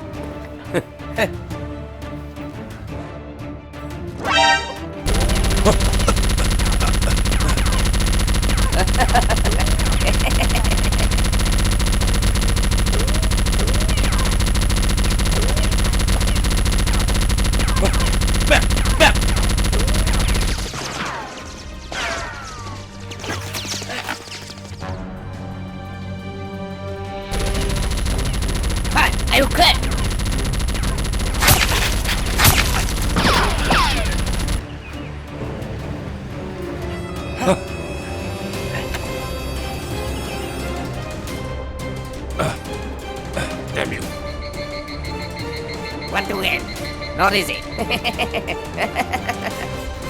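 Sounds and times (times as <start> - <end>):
rapid automatic gunfire: 5.0 - 20.9, 27.3 - 34.6
falling whistling tones: 44.1 - 47.9.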